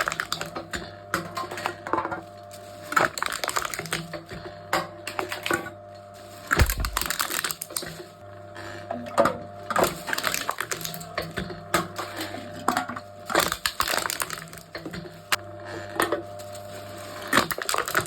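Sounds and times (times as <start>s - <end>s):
cans being crushed: 3.0s - 4.1s, 6.5s - 7.9s, 9.7s - 11.1s, 13.3s - 14.9s, 17.3s - 18.0s.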